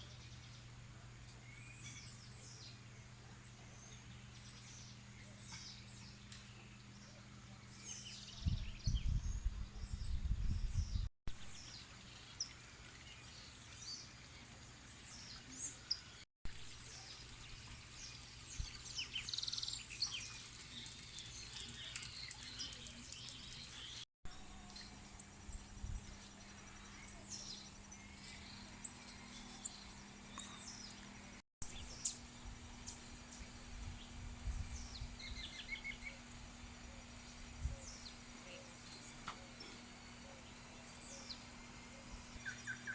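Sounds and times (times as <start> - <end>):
birds chirping and calling: 17.1 - 24.0, 34.6 - 42.9.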